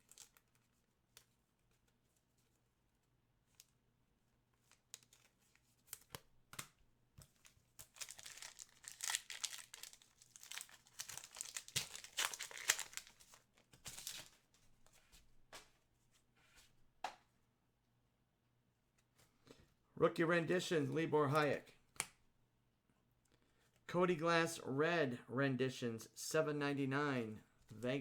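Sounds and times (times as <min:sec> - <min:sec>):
plastic wrapper tearing and crinkling: 0:00.0 - 0:00.4, 0:07.8 - 0:14.4.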